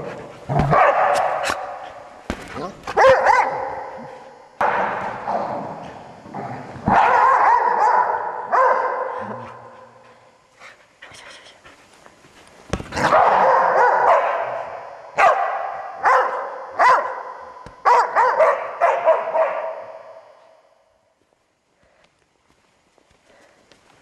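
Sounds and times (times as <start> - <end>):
dog barking: 0.6 - 1.8, 3.0 - 4.2, 6.9 - 9.2, 13.0 - 20.0.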